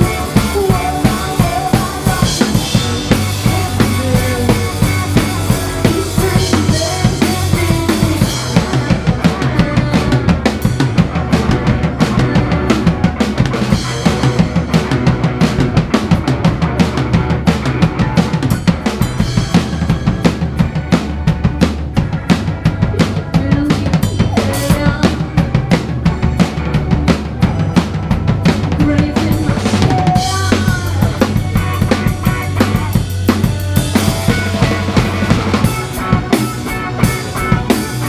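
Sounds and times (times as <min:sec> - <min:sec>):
fast drum hits: 0:00.0 - 0:38.0
live rock band playing: 0:00.0 - 0:38.0.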